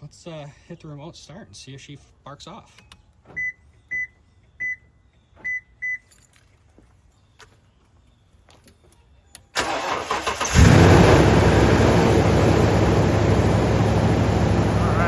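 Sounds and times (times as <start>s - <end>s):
engine high idle: 9.6s - 15.0s
engine starter cranking: 9.6s - 15.0s.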